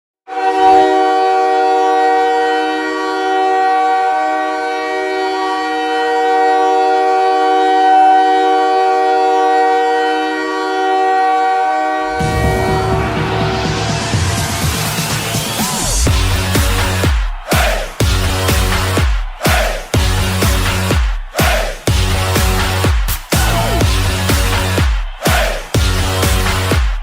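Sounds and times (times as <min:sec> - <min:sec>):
goal horn blast: 0:00.3 - 0:27.0
goal song music: 0:12.0 - 0:27.0.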